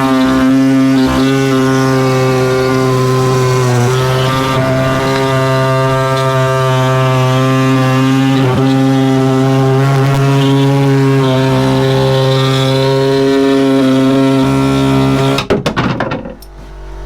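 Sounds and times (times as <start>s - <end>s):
pneumatic saw buzzing: 0.0s - 17.0s
rattles and knocks: 15.3s - 16.8s.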